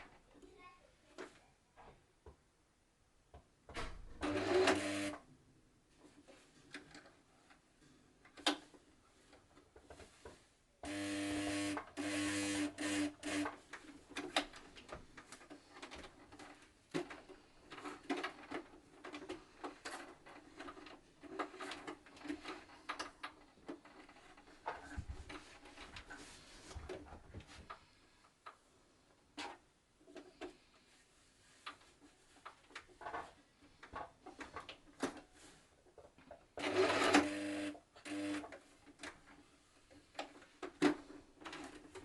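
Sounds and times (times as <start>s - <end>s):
sewing machine motor running: 10.9s - 13.5s.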